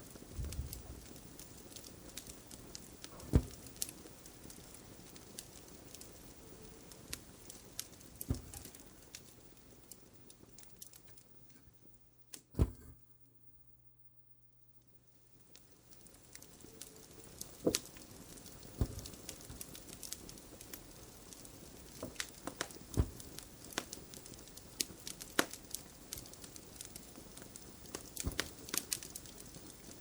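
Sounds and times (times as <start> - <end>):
fireplace crackling: 0.0 - 12.9, 15.0 - 30.0
thumps: 0.4 - 1.2, 3.1 - 3.8, 8.2 - 8.8, 12.6 - 13.1, 18.8 - 20.2, 22.9 - 23.4, 28.2 - 28.8.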